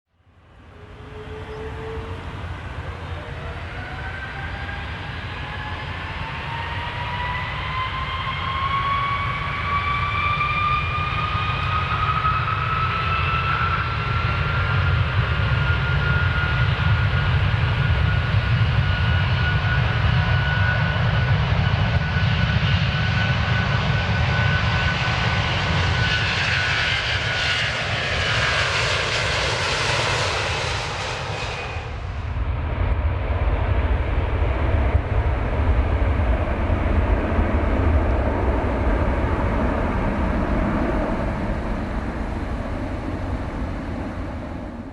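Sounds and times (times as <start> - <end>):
jet engines whining: 0.4 - 44.9
low rumble: 31.0 - 44.9.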